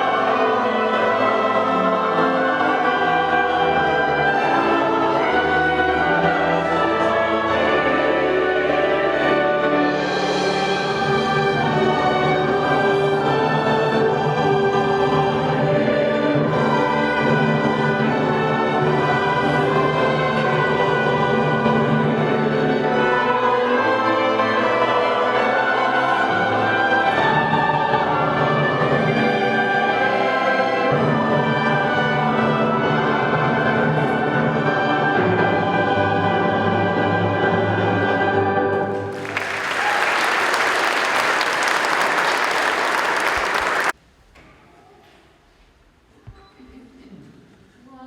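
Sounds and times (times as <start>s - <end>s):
audience applause: 38.9s - 44.0s.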